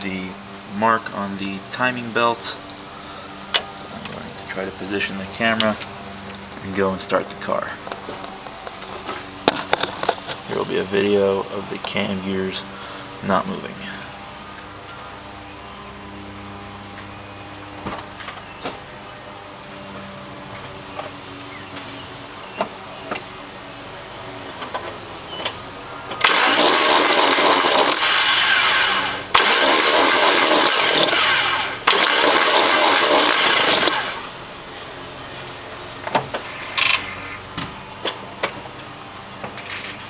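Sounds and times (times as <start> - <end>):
engine starter cranking: 1.7 - 11.3, 24.5 - 34.4, 36.3 - 37.1.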